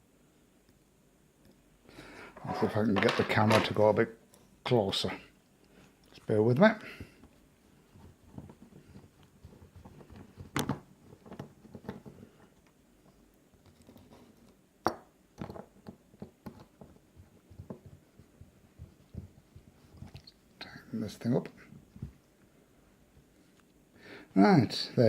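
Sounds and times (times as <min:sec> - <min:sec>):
small clicks and knocks of handling: 0:08.0 - 0:20.4.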